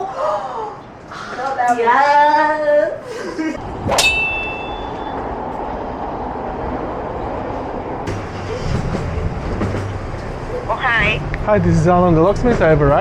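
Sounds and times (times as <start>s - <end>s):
rushing background noise: 3.0s - 13.0s
low hum: 3.6s - 11.6s
ringing ding: 3.9s - 5.2s.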